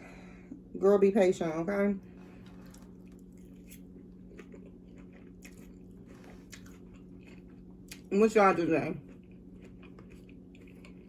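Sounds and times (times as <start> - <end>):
person chewing crunchy food: 2.2 - 11.0.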